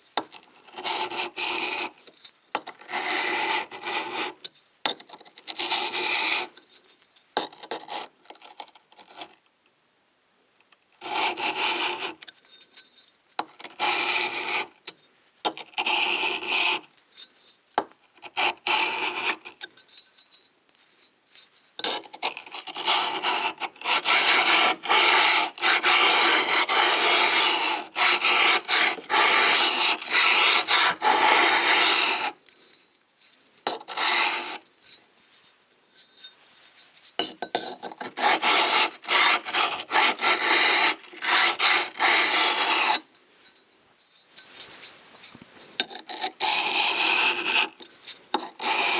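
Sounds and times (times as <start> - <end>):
sharpening stone rasping: 21.8 - 32.4, 33.7 - 34.6, 37.2 - 43.0, 45.8 - 47.7, 48.4 - 48.9.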